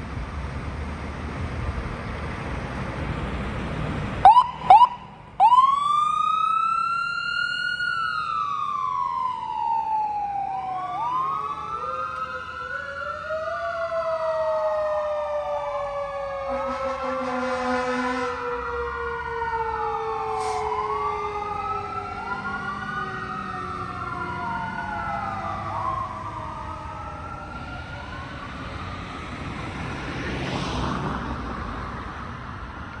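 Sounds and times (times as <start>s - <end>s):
mechanical siren winding down: 4.2s - 16.9s
electronic siren wailing: 4.2s - 29.2s.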